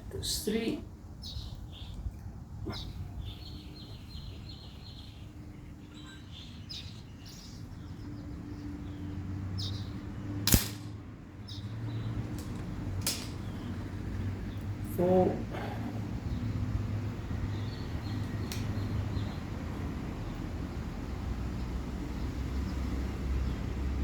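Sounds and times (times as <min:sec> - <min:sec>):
birds chirping: 0:00.0 - 0:24.0
air pistol shot: 0:10.5 - 0:11.0.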